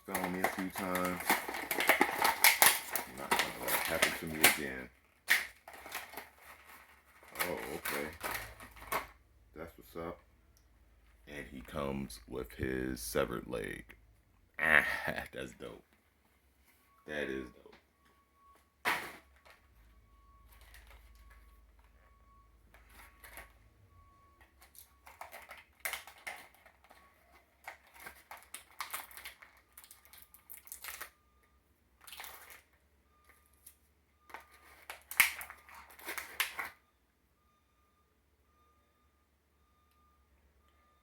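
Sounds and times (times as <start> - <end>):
plastic packaging rustling: 0.0 - 9.2, 24.6 - 31.2, 32.0 - 32.8, 33.6 - 36.8.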